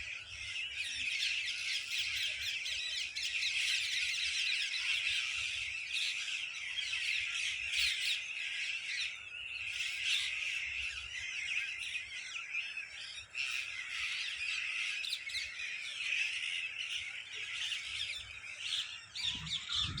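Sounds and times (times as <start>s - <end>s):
parrots squawking: 18.8s - 20.0s.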